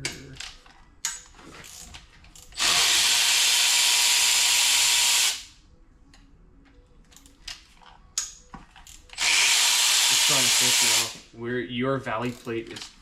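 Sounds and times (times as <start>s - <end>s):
metallic clicks of tools: 0.0s - 2.6s, 6.1s - 9.3s, 12.2s - 13.0s
power tool whine and hiss: 2.6s - 5.5s, 9.2s - 11.2s.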